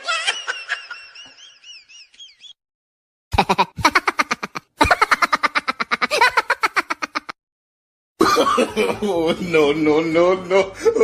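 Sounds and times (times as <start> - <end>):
different laugh or voice: 3.3 - 7.4.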